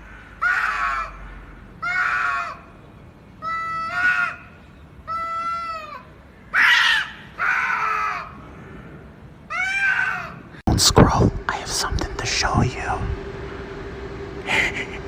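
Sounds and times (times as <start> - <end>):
parrot loud calls: 3.4 - 8.4, 9.5 - 10.5.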